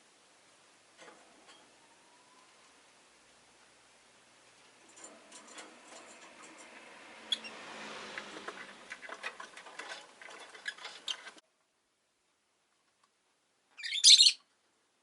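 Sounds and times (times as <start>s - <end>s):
bird clicking and scratching: 4.7s - 11.4s
passing street traffic: 4.7s - 11.4s.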